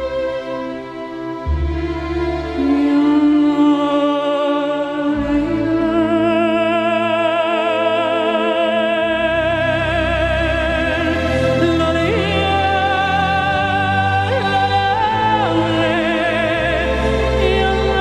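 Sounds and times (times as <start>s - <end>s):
slow music with vibrato melody: 0.0s - 18.0s
low bass notes: 1.2s - 3.9s.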